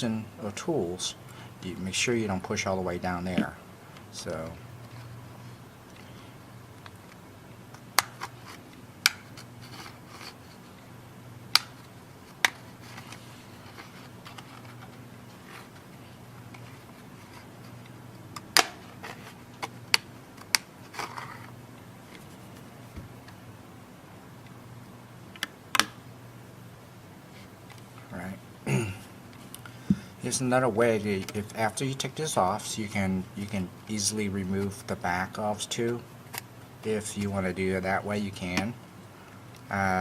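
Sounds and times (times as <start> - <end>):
plastic scratching: 6.8 - 10.9, 11.6 - 22.7
plastic clips snapping loose: 11.5 - 11.8, 25.3 - 26.0.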